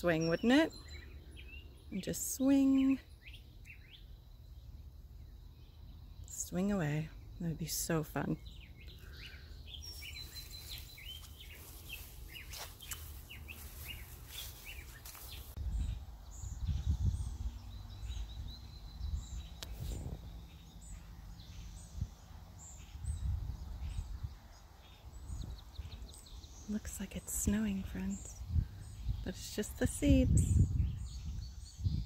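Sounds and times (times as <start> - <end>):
small birds chirping: 0.0 - 32.0
wind buffeting microphone: 15.5 - 20.7, 23.0 - 26.6, 27.4 - 32.0.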